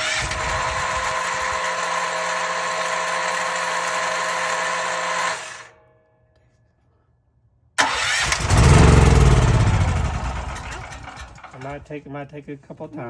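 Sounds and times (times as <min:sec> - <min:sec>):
generator starter cranking: 0:00.0 - 0:05.7, 0:07.8 - 0:11.9.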